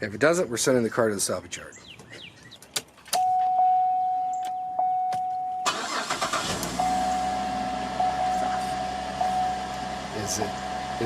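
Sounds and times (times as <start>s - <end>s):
electronic warning tone: 3.2s - 11.0s
car engine starting and idling: 4.8s - 11.0s.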